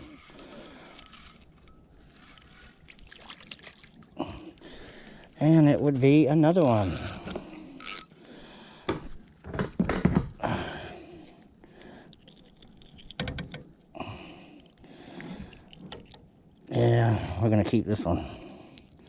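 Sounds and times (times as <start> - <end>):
small watery splashes: 2.4 - 5.4.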